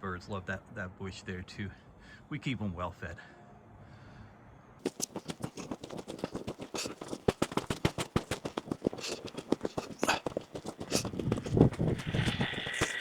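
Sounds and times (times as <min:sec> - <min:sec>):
boots crunching through icy snow: 0:04.8 - 0:13.0.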